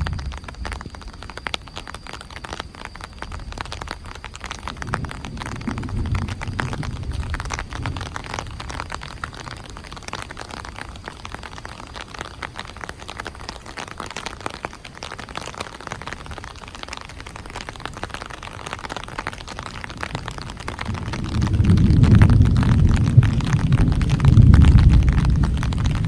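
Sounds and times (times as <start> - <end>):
deep thunder rumble: 0.0 - 11.9, 19.8 - 26.0
steady rain: 0.0 - 26.0.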